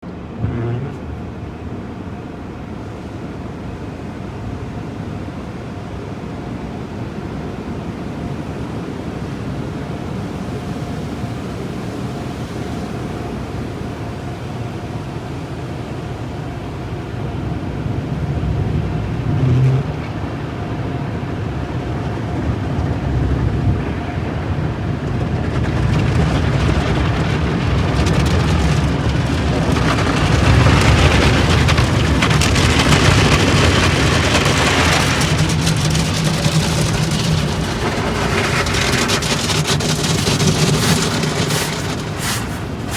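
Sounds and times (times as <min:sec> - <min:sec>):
car wash machinery rumble: 0:00.0 - 0:42.9
water spray hiss: 0:40.6 - 0:42.9.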